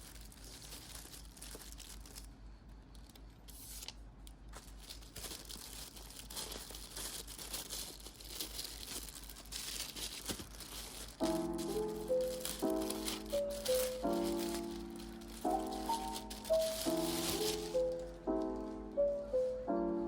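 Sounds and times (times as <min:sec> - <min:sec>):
plastic packaging crinkling and tearing: 0:00.0 - 0:18.6
background music: 0:11.1 - 0:20.0.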